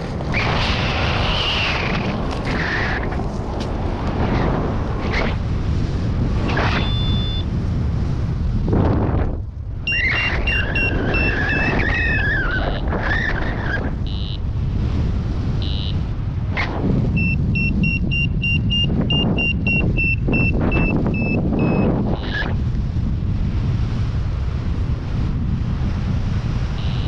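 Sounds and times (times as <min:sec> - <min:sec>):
wind noise on microphone: 0:00.0 - 0:27.0
variometer short beeps: 0:06.7 - 0:07.5, 0:09.8 - 0:11.8, 0:14.0 - 0:14.5, 0:15.6 - 0:16.0, 0:17.2 - 0:22.3, 0:26.8 - 0:27.0
wavering whistling tone: 0:09.9 - 0:12.8.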